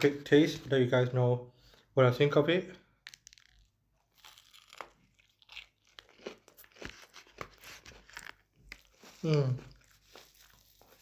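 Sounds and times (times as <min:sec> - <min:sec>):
chewing crunchy food: 0:03.0 - 0:11.0.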